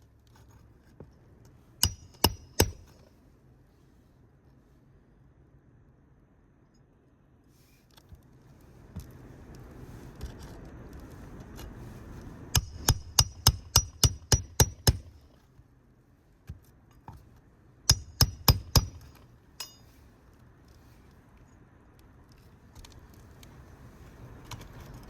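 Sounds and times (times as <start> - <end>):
hammer striking roofing nails: 1.8 - 2.9, 12.6 - 15.1, 17.9 - 19.2.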